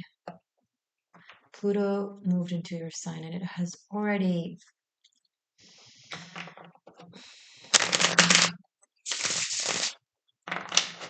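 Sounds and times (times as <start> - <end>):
cards being shuffled: 7.7 - 11.0.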